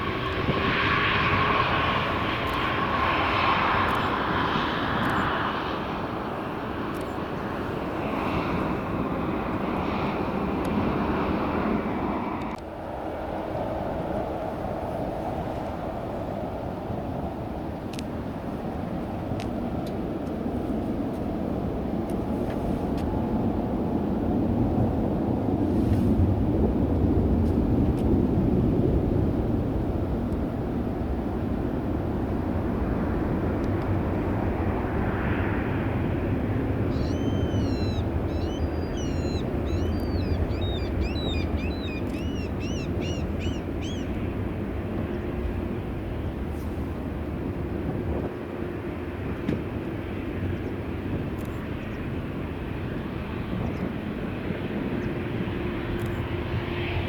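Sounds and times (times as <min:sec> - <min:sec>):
airliner engines rumbling: 0:00.0 - 0:57.0
small bird chirping: 0:36.9 - 0:44.1.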